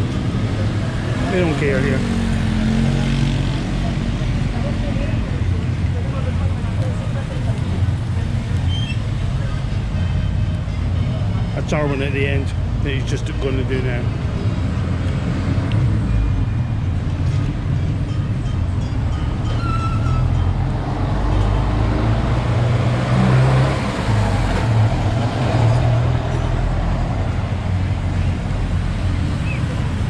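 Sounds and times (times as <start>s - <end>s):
vehicle engines running: 0.0s - 30.0s
vehicle passing by: 0.5s - 5.0s, 20.6s - 30.0s.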